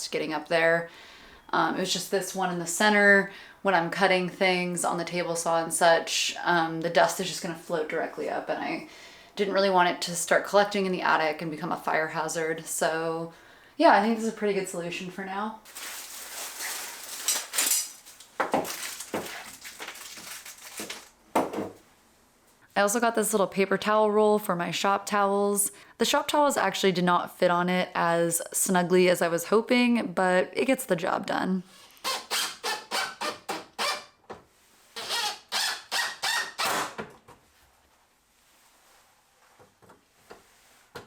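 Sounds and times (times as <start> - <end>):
hard objects knocking and clinking: 17.1 - 19.9
paper towel roll squeaking: 32.1 - 34.2, 34.9 - 37.0.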